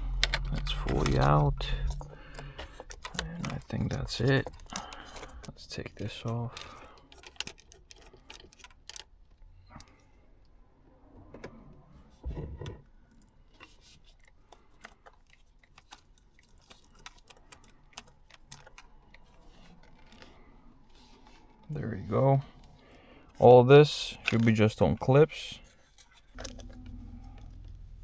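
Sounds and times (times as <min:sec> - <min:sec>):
metallic rattles of tools: 0:00.1 - 0:10.0.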